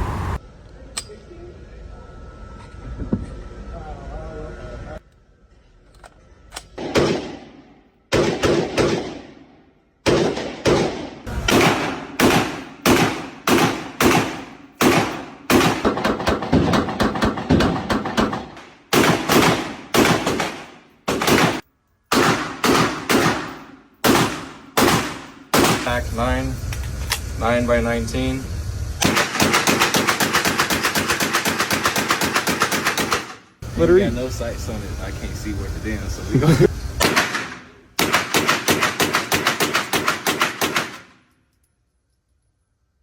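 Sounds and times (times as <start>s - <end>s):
gunshots: 6.8s - 26.0s, 29.0s - 33.5s, 37.0s - 41.2s.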